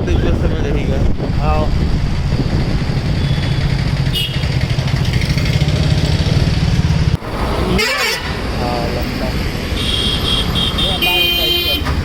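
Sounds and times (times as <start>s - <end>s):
motorcycle engine running: 2.0s - 7.6s.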